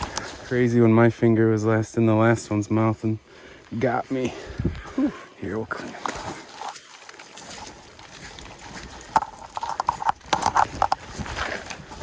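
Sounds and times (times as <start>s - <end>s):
splashing in shallow water: 4.8s - 12.0s.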